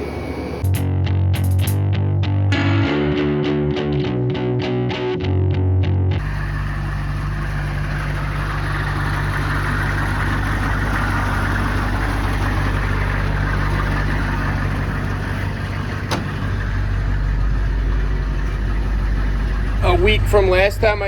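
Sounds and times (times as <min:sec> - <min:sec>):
vehicle engine idling: 0:00.0 - 0:01.8, 0:06.1 - 0:21.0
sharp click: 0:00.6 - 0:01.8.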